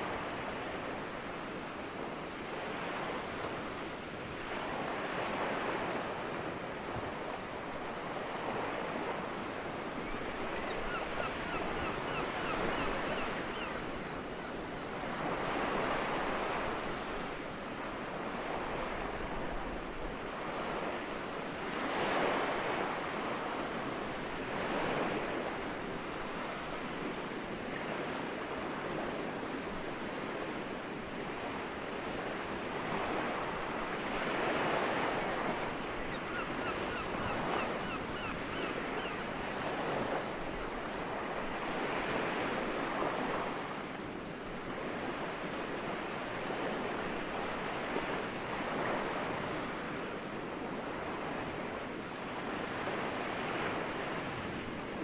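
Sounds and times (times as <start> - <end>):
sea waves washing onto shore: 0.0 - 10.6.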